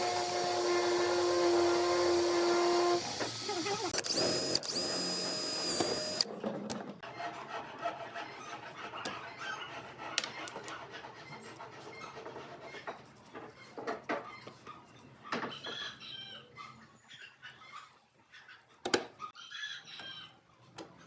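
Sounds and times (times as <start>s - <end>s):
power tool whining: 0.0s - 6.3s.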